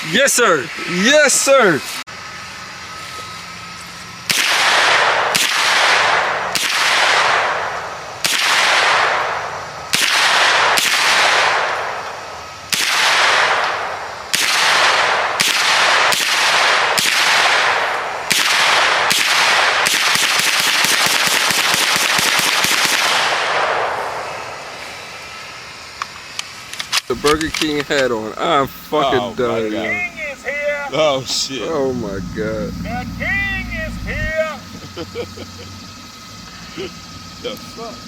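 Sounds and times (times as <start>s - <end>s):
gunshots: 4.3s - 12.0s, 12.7s - 24.4s
rapid gunfire: 4.3s - 12.0s, 12.7s - 24.1s.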